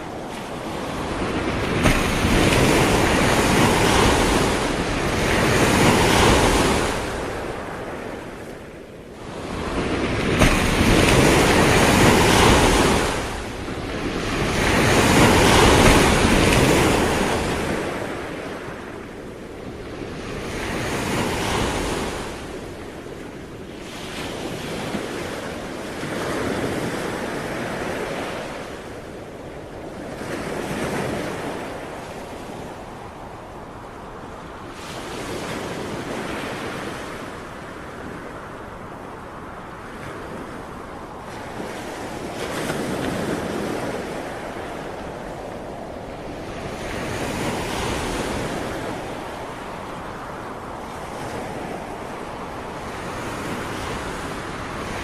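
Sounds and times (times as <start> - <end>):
ocean waves breaking on shore: 0.0 - 55.0.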